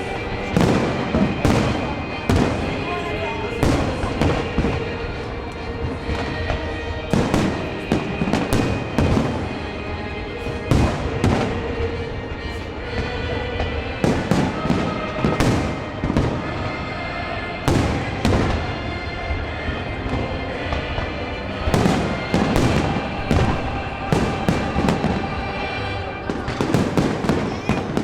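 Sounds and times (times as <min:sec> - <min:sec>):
fireworks bangs: 0:00.0 - 0:28.0
music playing: 0:00.0 - 0:28.0.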